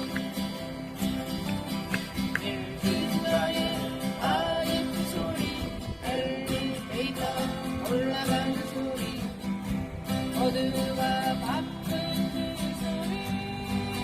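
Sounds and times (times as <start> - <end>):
acoustic guitar strumming: 0.0 - 14.0
person singing: 2.3 - 9.4, 10.2 - 14.0.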